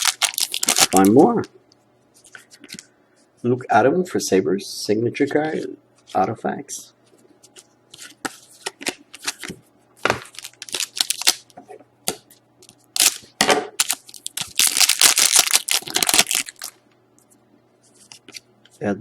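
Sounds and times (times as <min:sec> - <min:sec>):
card pack wrapper crinkling and tearing: 0:00.0 - 0:01.2, 0:08.8 - 0:11.5, 0:12.9 - 0:16.8
cards rustling in hands: 0:00.0 - 0:01.2, 0:07.1 - 0:11.5, 0:12.1 - 0:18.8.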